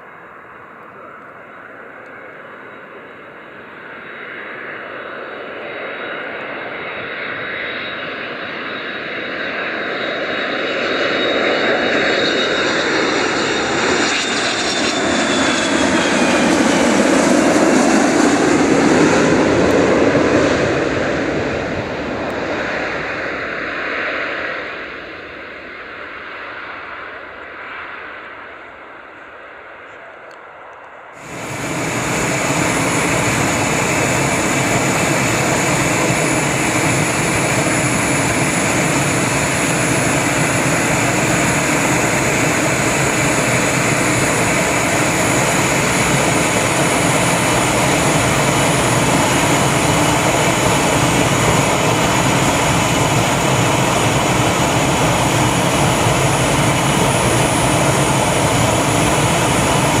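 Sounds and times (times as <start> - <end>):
jet engines whining: 0.0 - 60.0.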